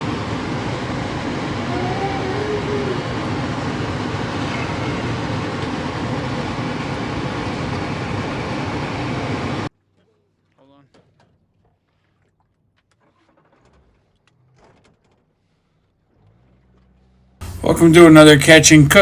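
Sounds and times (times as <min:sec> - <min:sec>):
motorboat rushing noise: 0:00.0 - 0:09.7, 0:16.4 - 0:19.0.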